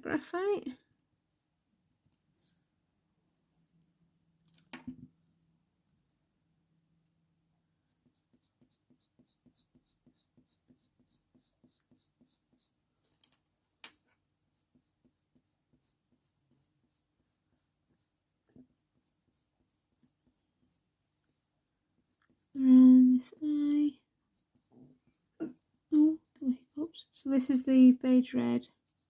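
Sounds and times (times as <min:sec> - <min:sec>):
drawing tool scratching paper: 0:07.8 - 0:13.2, 0:13.9 - 0:21.3, 0:22.0 - 0:22.6, 0:28.7 - 0:29.0.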